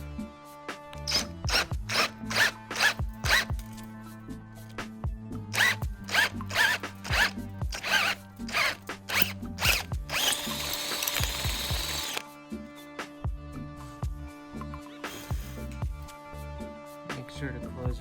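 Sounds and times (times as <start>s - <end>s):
power drill boring metal: 1.0s - 3.7s, 5.5s - 12.2s, 14.9s - 15.9s.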